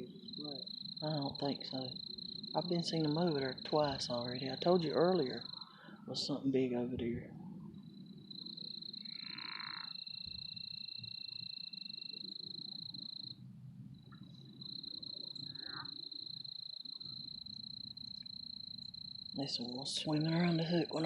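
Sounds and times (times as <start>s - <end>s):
frogs low rattling chorus: 0.0s - 21.0s
frog high-pitched trill: 8.5s - 12.2s, 15.1s - 17.2s.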